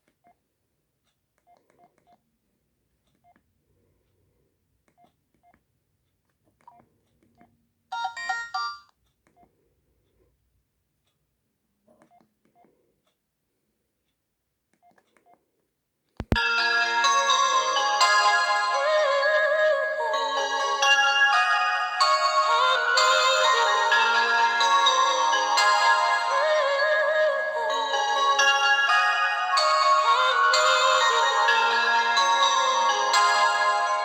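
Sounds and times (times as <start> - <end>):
polyphonic ringtone melody: 7.9 - 8.9, 16.2 - 34.0
keypad beeps and clicks: 7.9 - 9.4.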